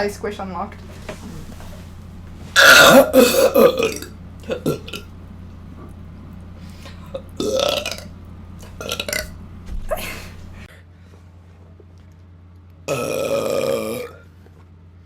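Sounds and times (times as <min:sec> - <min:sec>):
person burping loudly: 0:02.6 - 0:05.1, 0:07.1 - 0:08.1, 0:08.8 - 0:09.3, 0:12.9 - 0:14.2.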